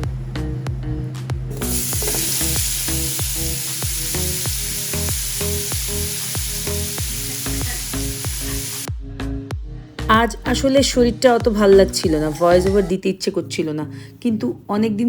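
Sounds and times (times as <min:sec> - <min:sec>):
background music with steady beat: 0:00.0 - 0:13.0
potatoes sizzling in oil: 0:01.5 - 0:08.9.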